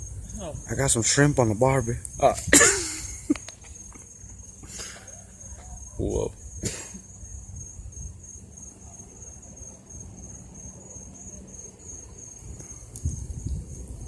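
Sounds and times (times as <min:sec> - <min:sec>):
wind rumble on microphone: 0:00.0 - 0:03.3, 0:05.6 - 0:08.4, 0:12.1 - 0:14.0
crickets chirping: 0:00.0 - 0:14.0.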